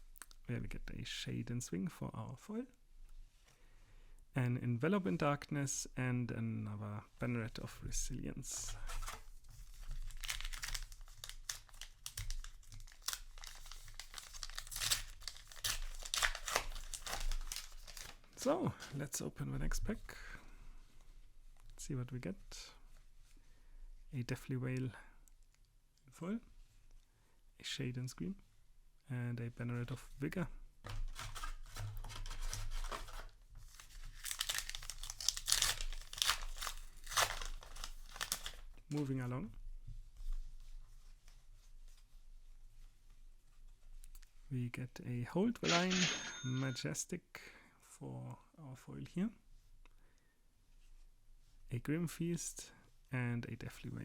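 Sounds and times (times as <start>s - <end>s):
foil wrapper crinkling and tearing: 8.9s - 18.9s, 31.1s - 38.8s.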